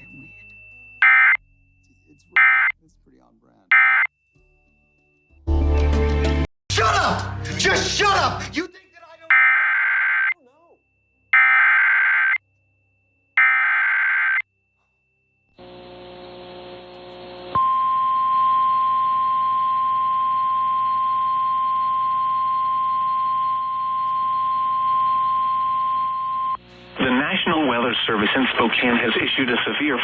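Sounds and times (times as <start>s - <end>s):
steady warning alarm tone: 0.0s - 2.8s, 3.7s - 4.3s, 9.3s - 10.4s, 11.0s - 28.2s
rapid two-pitch digital chirping: 1.0s - 2.7s
receiver hiss: 15.6s - 17.8s, 20.4s - 30.0s.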